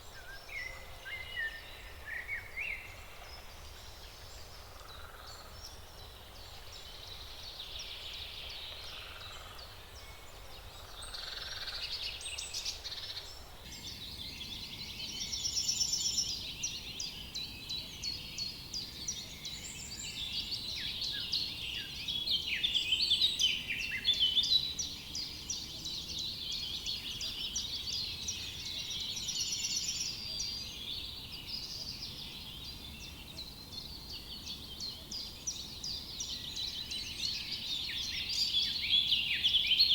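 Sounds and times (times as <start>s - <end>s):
songbirds singing and chirping: 0.0s - 39.9s.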